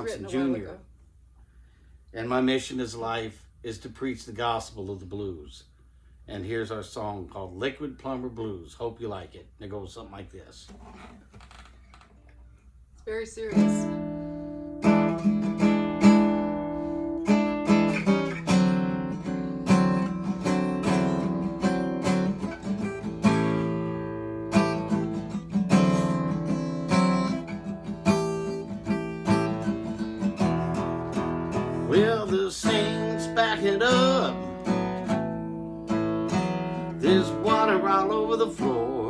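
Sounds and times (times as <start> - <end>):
acoustic guitar blues: 13.1 - 39.0.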